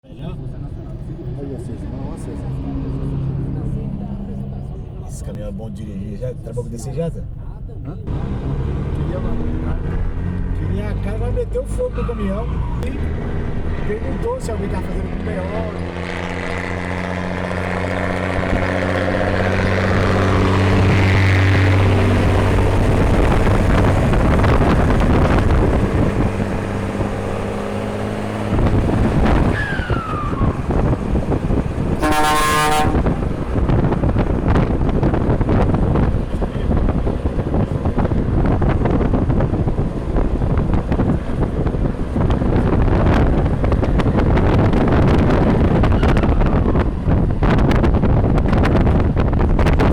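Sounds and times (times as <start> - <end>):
diesel truck engine droning: 0.0 - 49.9
truck horn blast: 31.9 - 33.4.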